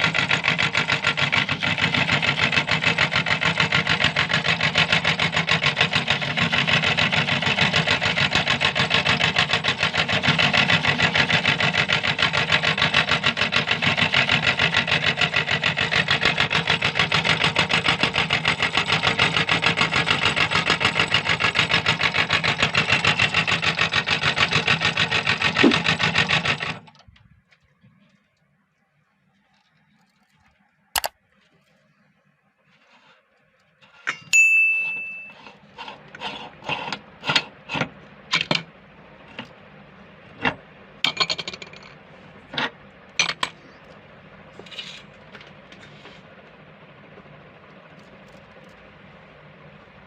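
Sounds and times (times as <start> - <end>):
electric meat grinder rattling: 0.0 - 27.0.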